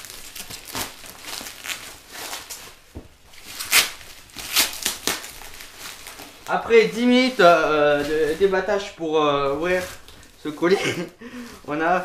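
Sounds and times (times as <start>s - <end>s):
packaging rustling and crackling: 0.0s - 12.0s.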